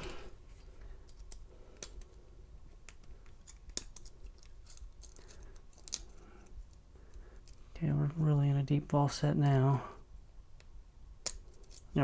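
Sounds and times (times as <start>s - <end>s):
lock pick clicks and scrapes: 2.9s - 6.5s, 11.2s - 12.0s.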